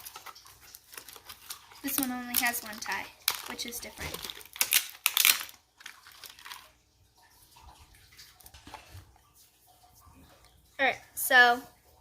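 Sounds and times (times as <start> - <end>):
plastic packaging crinkling: 0.0 - 6.8.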